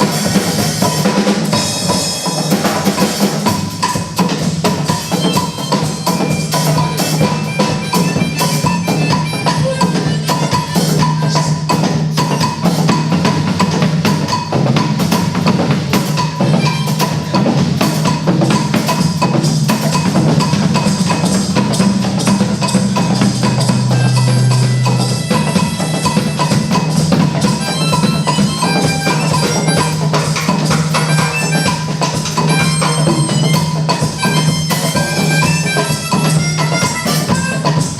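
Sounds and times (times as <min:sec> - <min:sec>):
dense percussion strikes: 0:00.0 - 0:37.9
mallet percussion tones: 0:00.0 - 0:37.9
held low notes: 0:20.2 - 0:35.6.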